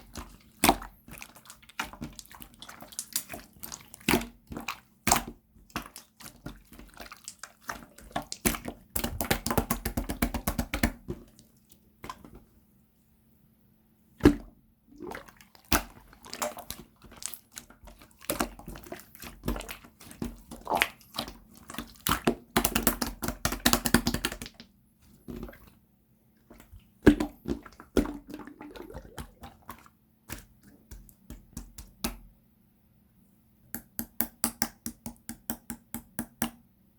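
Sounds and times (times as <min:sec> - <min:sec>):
slime squelching: 0:00.0 - 0:12.5, 0:14.2 - 0:25.8, 0:26.4 - 0:32.3
slime popping: 0:27.1 - 0:29.7.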